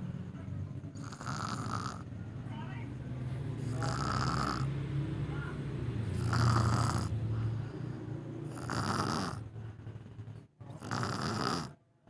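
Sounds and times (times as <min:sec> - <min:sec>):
child snoring: 0:01.0 - 0:02.1, 0:03.6 - 0:04.8, 0:06.0 - 0:11.8.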